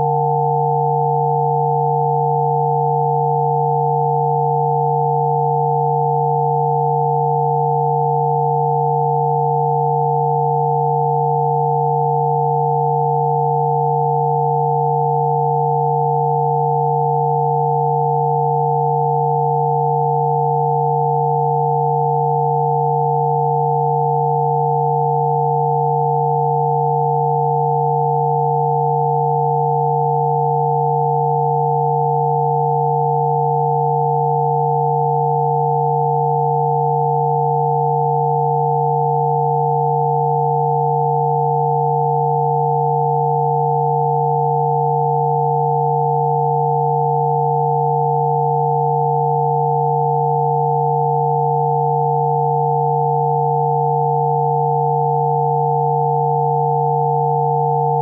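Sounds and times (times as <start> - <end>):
steady electronic sine tones: 0.0 - 58.0.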